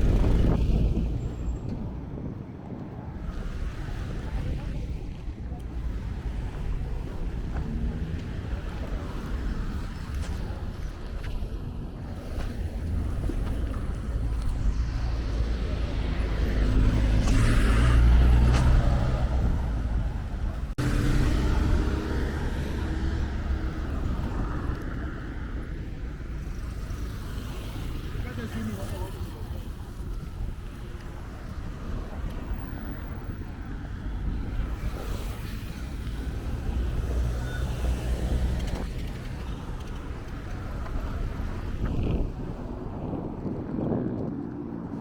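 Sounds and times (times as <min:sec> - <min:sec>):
steady low traffic rumble: 0:00.0 - 0:45.0
wind buffeting microphone: 0:00.0 - 0:45.0
vehicle engine passing: 0:13.0 - 0:25.7.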